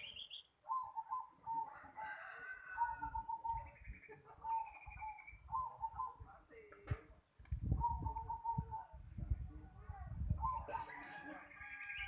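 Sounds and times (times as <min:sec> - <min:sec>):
bird rapid trill: 0:00.0 - 0:01.0
doves cooing: 0:00.1 - 0:06.3, 0:07.7 - 0:09.0, 0:10.4 - 0:12.0.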